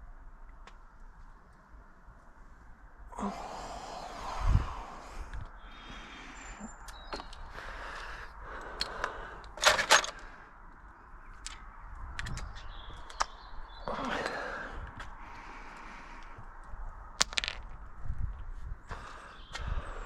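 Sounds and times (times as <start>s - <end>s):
metal parts clattering: 9.6s - 10.2s.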